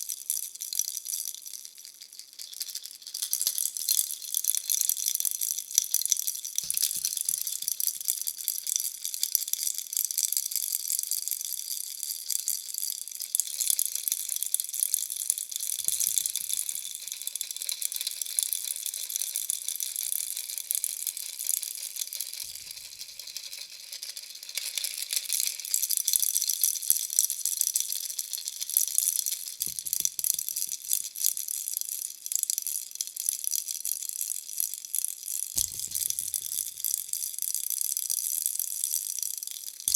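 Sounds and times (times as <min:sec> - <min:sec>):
baby toy rattle shaken: 0:01.5 - 0:09.7, 0:15.6 - 0:20.4, 0:21.6 - 0:31.5, 0:35.6 - 0:37.5, 0:39.7 - 0:39.9.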